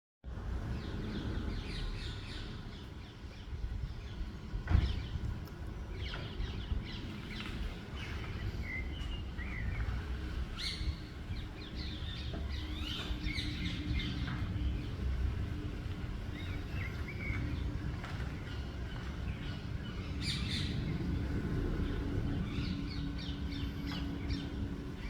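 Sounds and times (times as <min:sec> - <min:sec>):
city traffic rumble: 0:00.2 - 0:25.0
small birds chirping: 0:00.8 - 0:25.0.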